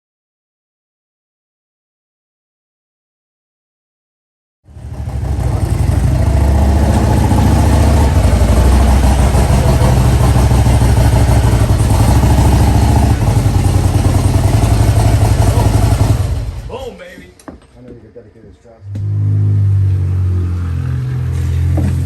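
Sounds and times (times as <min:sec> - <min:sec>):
vehicle engine running: 0:04.7 - 0:17.0, 0:18.8 - 0:22.0.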